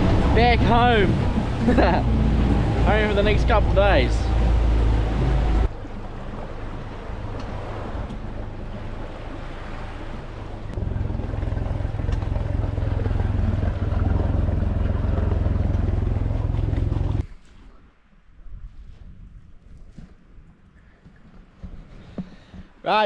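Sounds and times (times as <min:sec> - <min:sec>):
outboard motor rumbling: 0:00.0 - 0:17.2.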